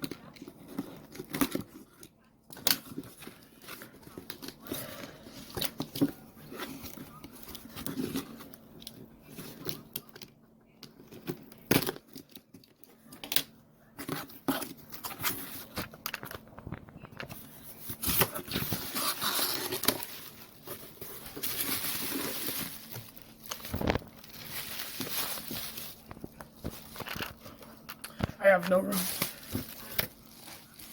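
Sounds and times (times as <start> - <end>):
packaging tearing and crinkling: 17.8 - 30.9.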